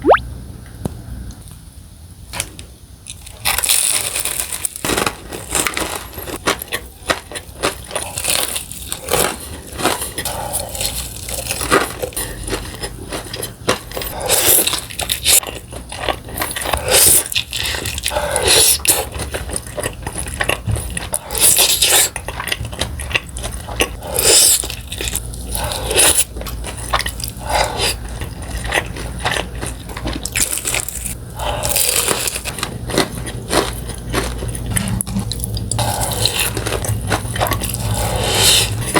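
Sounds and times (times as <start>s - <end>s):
crunchy chewing of fried chicken: 2.4s - 38.9s.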